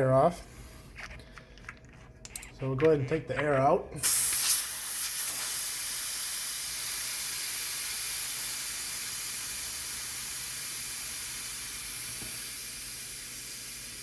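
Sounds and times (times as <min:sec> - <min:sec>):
air hissing out of tire valve: 0:04.0 - 0:14.0.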